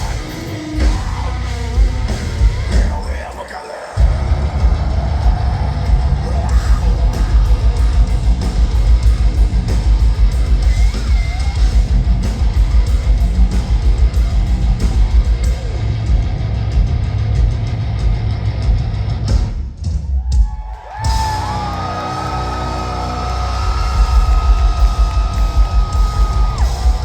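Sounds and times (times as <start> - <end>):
rapid heavy drum hits: 0.0 - 3.2, 4.0 - 27.0
yelled vocals: 0.0 - 8.8, 20.8 - 27.0
distorted guitars: 0.0 - 19.6, 20.9 - 27.0
heavy metal band playing: 0.0 - 19.7, 20.3 - 27.0.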